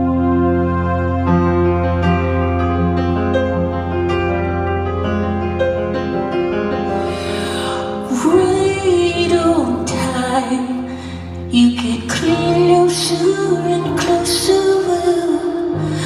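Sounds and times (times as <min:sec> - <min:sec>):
piano chords: 0:00.0 - 0:16.0
woman singing: 0:08.0 - 0:16.0.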